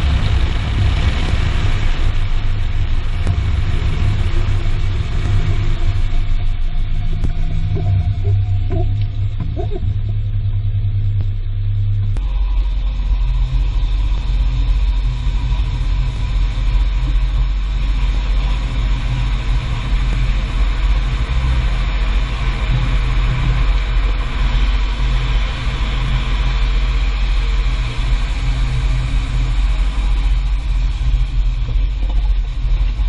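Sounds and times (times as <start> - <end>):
faint steady whine: 0.0 - 33.0
road and tyre noise: 0.0 - 33.0
hiss: 12.2 - 33.0.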